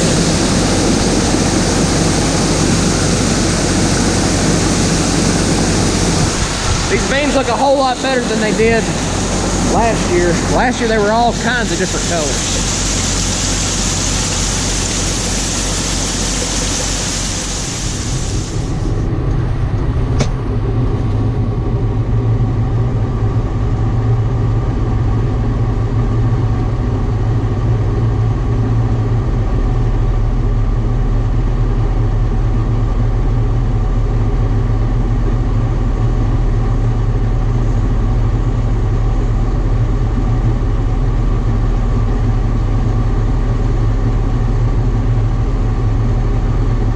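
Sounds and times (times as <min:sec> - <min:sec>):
high hiss: 0:00.0 - 0:19.0
combine engine hum: 0:00.0 - 0:46.9.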